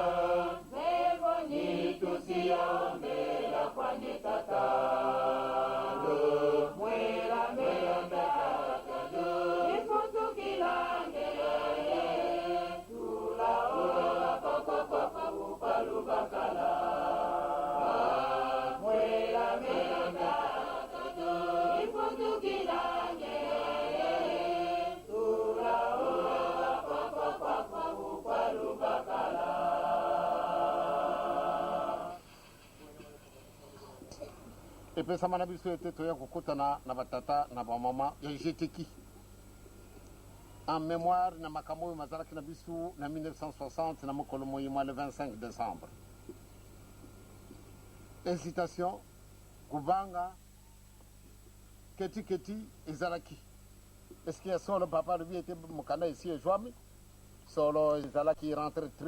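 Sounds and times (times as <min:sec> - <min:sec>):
choir singing: 0:00.0 - 0:32.2.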